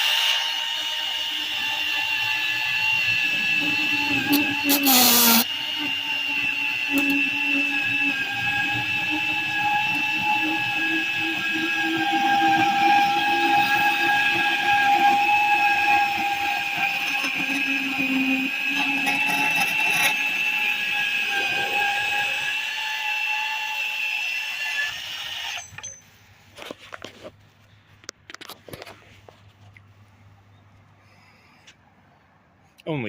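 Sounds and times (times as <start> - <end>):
power saw cutting metal: 0.0 - 26.2.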